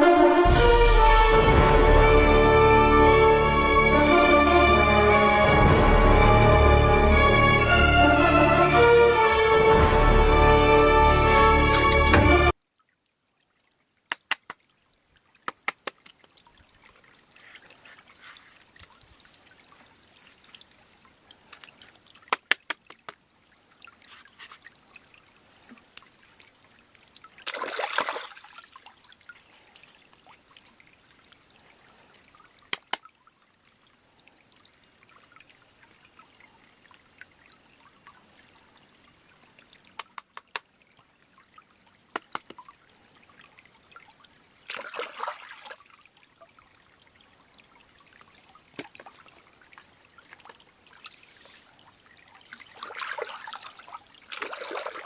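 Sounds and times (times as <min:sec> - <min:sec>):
plastic clicks and taps: 0:40.0 - 0:40.6.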